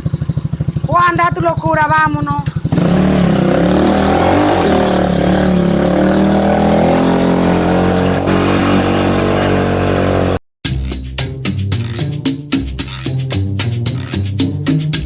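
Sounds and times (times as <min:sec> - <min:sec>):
motorcycle engine revving: 0:00.0 - 0:10.4.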